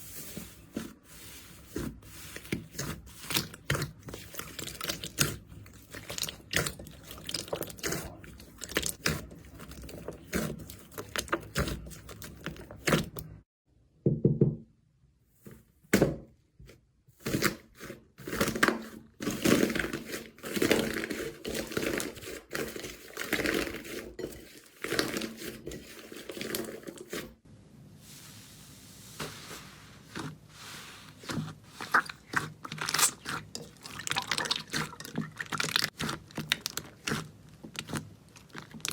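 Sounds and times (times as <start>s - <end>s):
slime squelching: 0.0s - 13.4s, 17.2s - 27.4s, 28.0s - 38.9s
slime popping and crackling: 31.9s - 38.9s.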